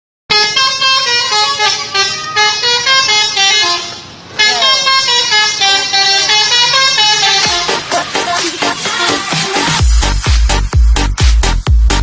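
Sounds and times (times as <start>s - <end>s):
multi-tone bus air horn tune: 0.3s - 9.8s.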